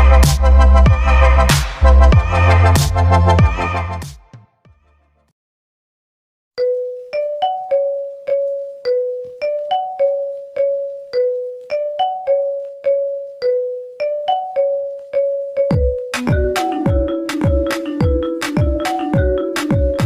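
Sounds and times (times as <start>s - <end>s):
tune with deep bass notes: 0.0s - 4.0s
electric piano ringtone melody: 6.6s - 20.0s.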